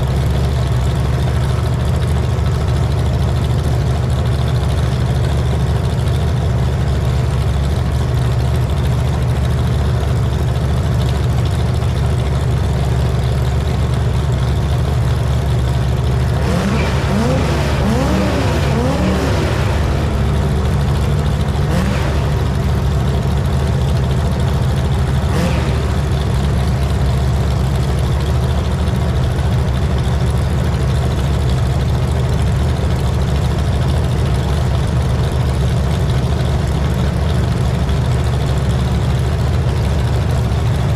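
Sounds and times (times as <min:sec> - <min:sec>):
loud engine revving: 0:16.2 - 0:27.0.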